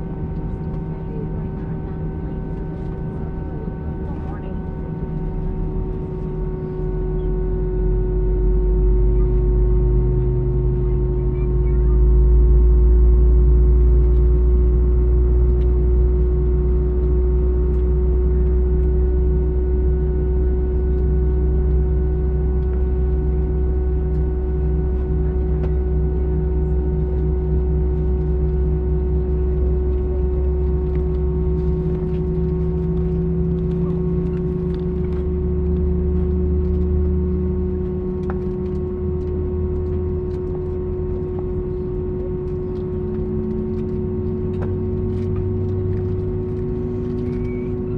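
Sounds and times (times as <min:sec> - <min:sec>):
cabin hum: 0:19.6 - 0:47.9.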